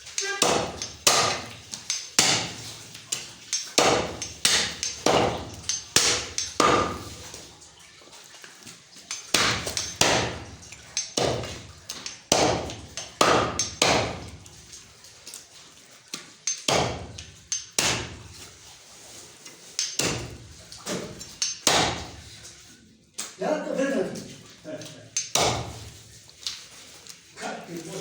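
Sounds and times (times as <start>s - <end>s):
knife chopping through bone: 0.4s - 1.5s, 2.2s - 2.6s, 3.8s - 7.0s, 9.3s - 10.4s, 12.3s - 14.2s.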